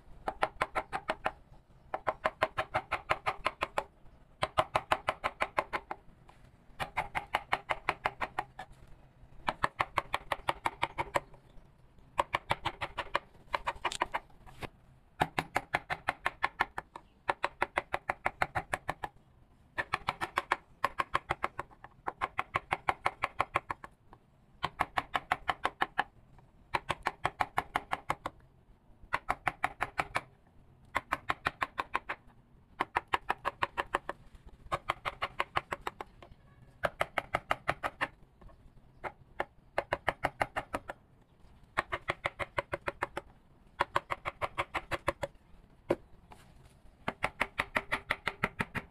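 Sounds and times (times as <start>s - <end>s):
mallet tapping chisel into wood: 47.0s - 48.9s.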